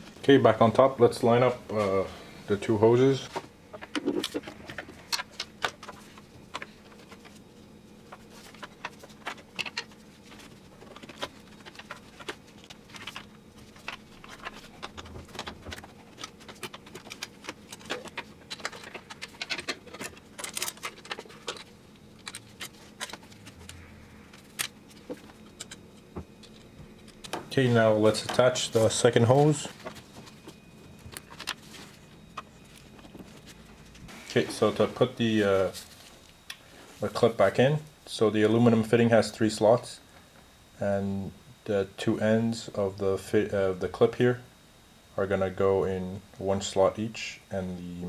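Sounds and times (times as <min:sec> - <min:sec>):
hands handling plastic fittings: 0:03.3 - 0:07.4.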